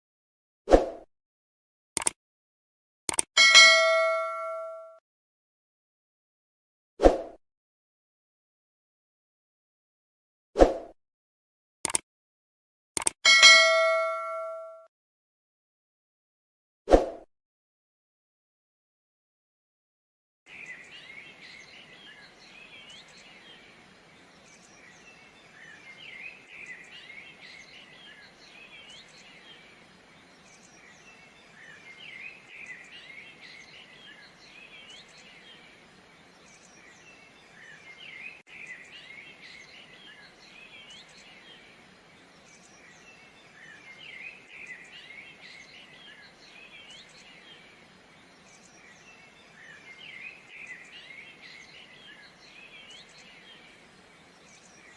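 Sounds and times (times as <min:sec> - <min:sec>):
small birds chirping: 0:20.5 - 0:54.9.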